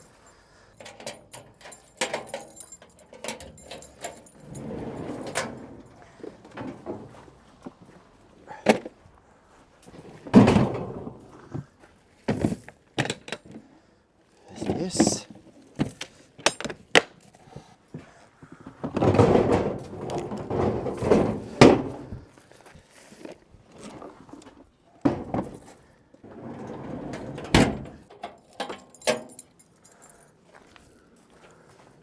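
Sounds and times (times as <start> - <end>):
tools rustling and clattering: 0.0 - 7.8, 14.6 - 17.4, 26.6 - 31.4.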